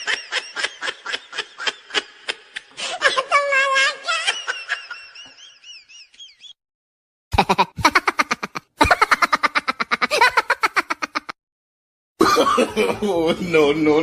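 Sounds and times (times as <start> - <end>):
staccato laughing: 7.4 - 11.4.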